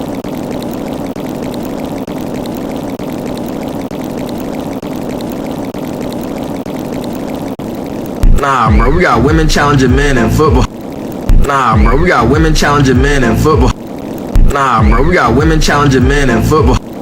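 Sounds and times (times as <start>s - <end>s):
steady rushing noise: 0.0s - 17.0s.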